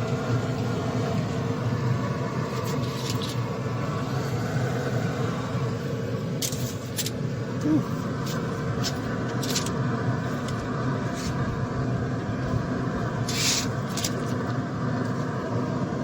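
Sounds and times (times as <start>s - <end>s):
low mechanical rumble: 0.0s - 16.0s
hiss-like scrape: 2.5s - 3.4s, 10.3s - 11.5s, 13.2s - 14.4s.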